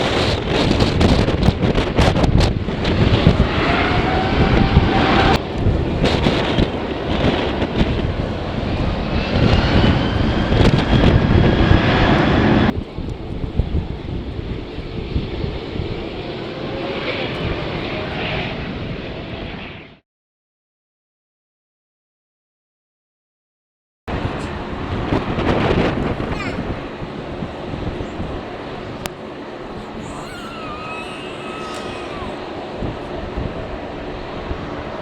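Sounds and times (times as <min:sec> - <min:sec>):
wind on microphone: 0:00.0 - 0:19.6, 0:24.1 - 0:35.0
jet engines roaring and whining: 0:00.0 - 0:20.0, 0:24.1 - 0:35.0.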